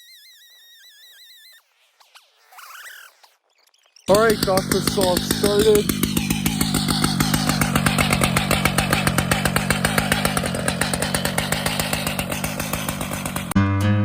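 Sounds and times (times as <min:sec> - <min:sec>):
chainsaw engine running: 0:04.1 - 0:13.6.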